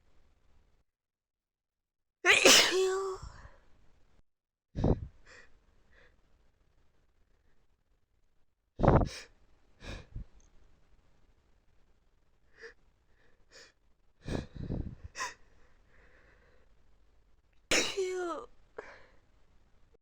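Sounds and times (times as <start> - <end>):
person sneezing: 2.3 - 3.3, 17.7 - 18.4.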